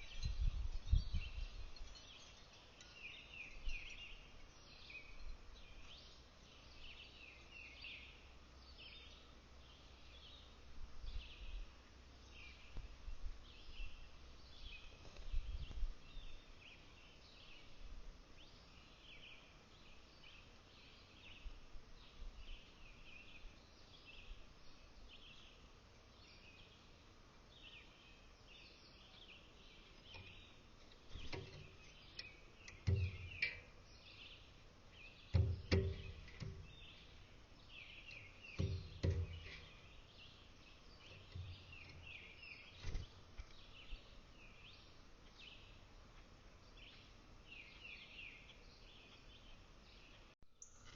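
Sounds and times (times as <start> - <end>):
small birds chirping: 0.0 - 50.9
loud dull thumps: 35.3 - 36.9, 38.5 - 39.6.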